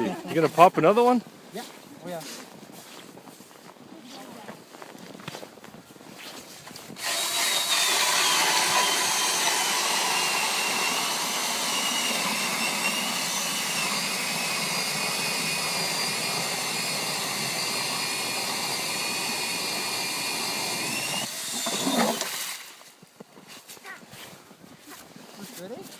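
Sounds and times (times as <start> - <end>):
drill motor whine: 7.0 - 22.7
ice auger grinding through ice: 7.0 - 23.0.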